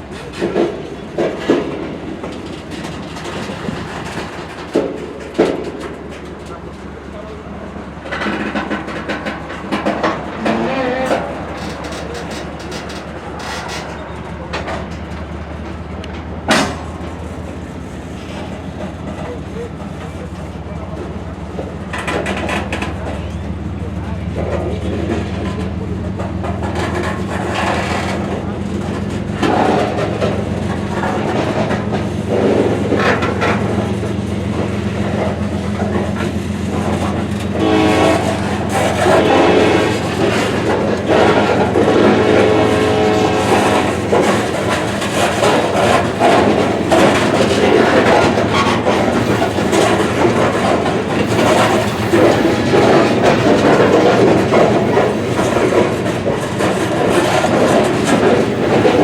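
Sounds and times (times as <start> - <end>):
diesel engine drone: 0.0 - 59.0
train wheels clicking on rails: 0.0 - 59.0
locomotive horn: 10.4 - 11.4, 37.0 - 56.2.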